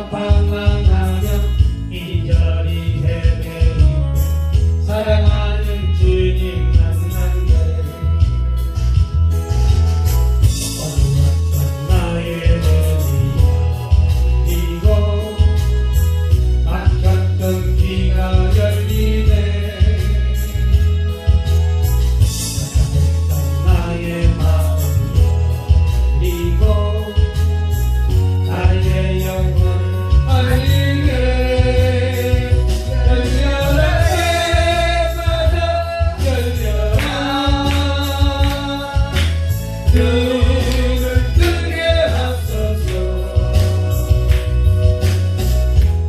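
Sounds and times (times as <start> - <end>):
backing track with bass beat: 0.0 - 46.0
person singing: 28.4 - 45.2.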